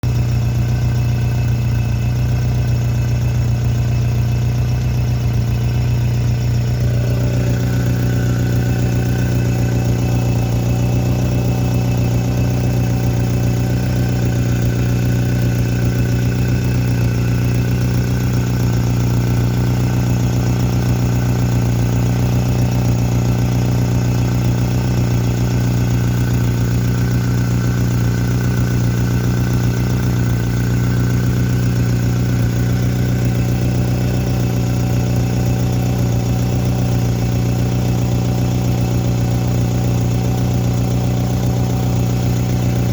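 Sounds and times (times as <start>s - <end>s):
car engine idling: 0.0s - 42.9s.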